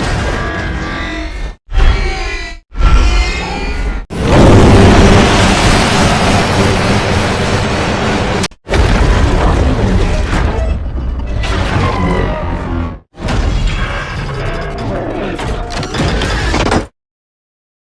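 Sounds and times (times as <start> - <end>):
film sound effects low rumble: 2.8 - 13.0.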